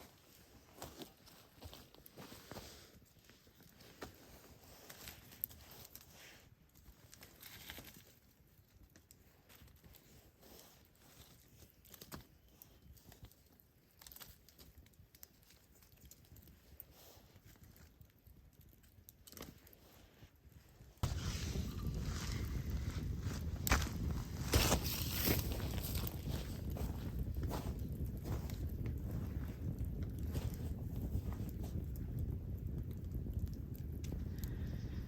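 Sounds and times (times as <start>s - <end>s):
footsteps on gravel: 21.0s - 28.5s.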